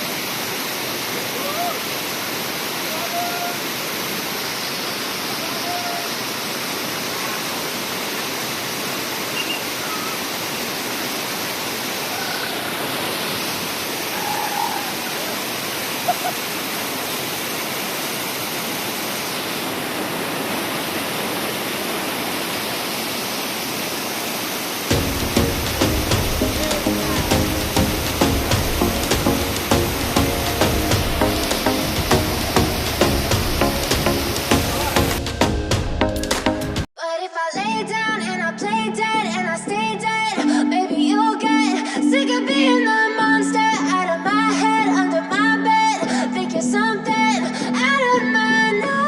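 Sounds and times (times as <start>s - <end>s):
waterfall rushing: 0.0s - 36.9s
music: 24.9s - 49.0s.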